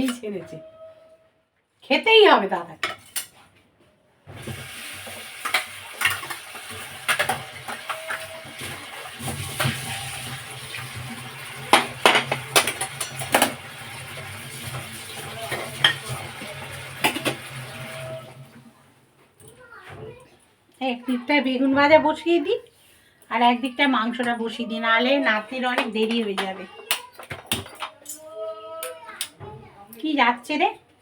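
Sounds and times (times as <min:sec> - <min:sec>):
stove cooking hiss and hum: 0:04.3 - 0:18.6.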